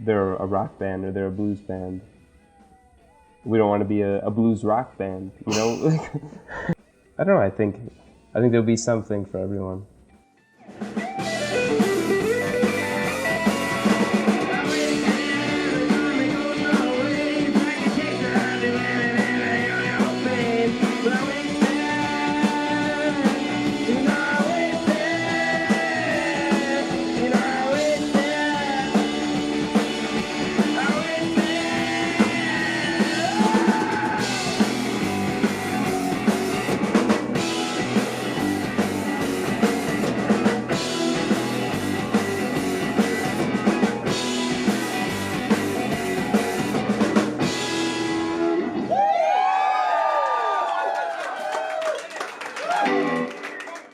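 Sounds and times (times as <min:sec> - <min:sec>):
person singing: 0:05.5 - 0:06.8
electric guitar: 0:10.7 - 0:49.0, 0:52.7 - 0:53.7.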